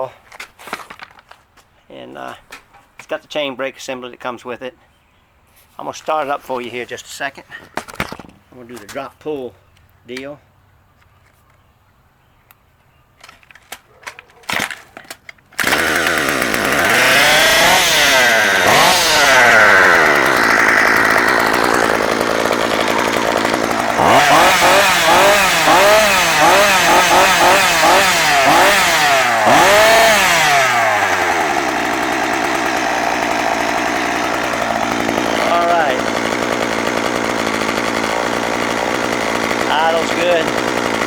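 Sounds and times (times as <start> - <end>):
chainsaw engine revving: 15.6 - 41.0.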